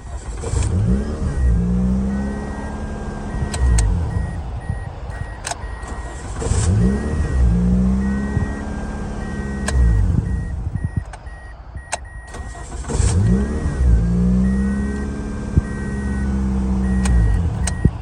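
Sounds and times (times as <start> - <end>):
car engine starting and idling: 0.0 - 18.0
sharp clicks: 3.4 - 6.1, 9.5 - 12.4, 16.9 - 18.0.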